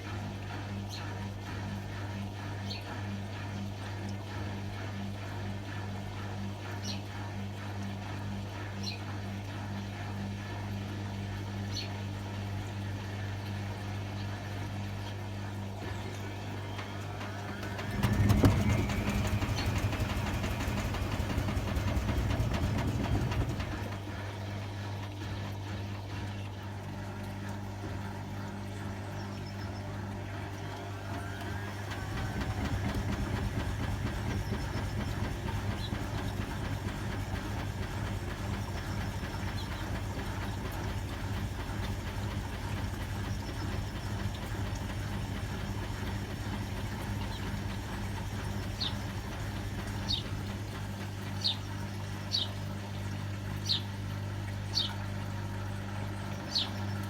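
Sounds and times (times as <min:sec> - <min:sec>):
washing machine drum running: 0:13.4 - 0:57.0.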